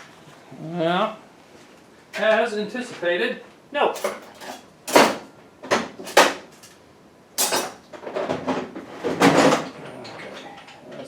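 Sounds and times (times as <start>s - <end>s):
metallic clacks of tools: 4.0s - 6.7s, 7.4s - 7.8s.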